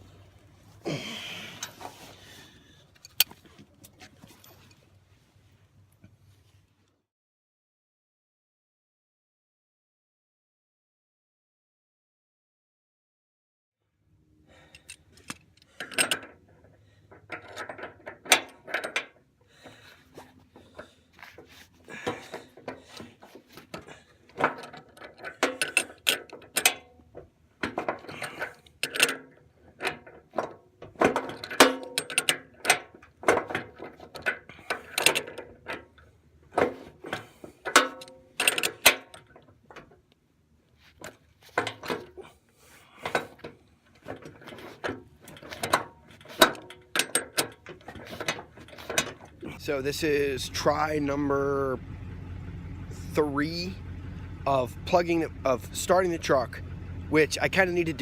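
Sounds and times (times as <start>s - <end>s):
hand tools clanking on metal: 14.6s - 40.0s, 40.9s - 51.6s, 54.5s - 58.0s.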